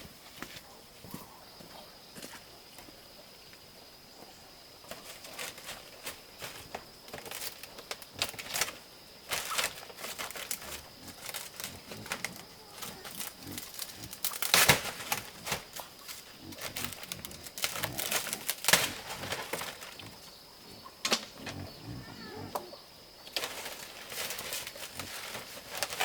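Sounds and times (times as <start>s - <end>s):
rustling and light clicks: 4.8s - 20.2s, 23.3s - 26.0s.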